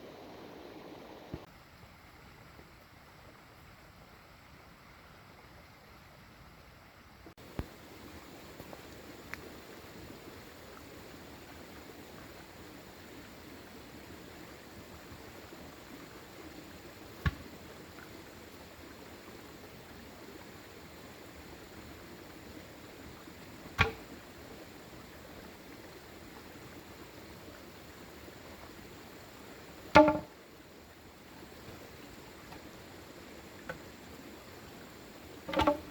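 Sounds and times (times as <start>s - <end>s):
rain hissing: 0.0s - 1.5s, 7.4s - 35.9s
sharp ringing knock: 30.0s - 30.3s.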